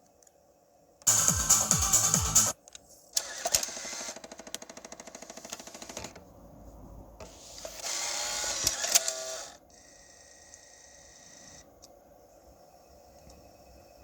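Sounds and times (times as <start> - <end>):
rapid mechanical clicking: 3.2 - 6.2.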